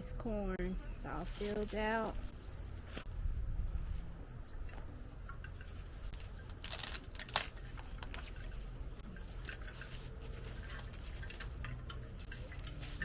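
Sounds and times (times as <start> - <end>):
corn husks crackling and tearing: 6.1 - 8.6.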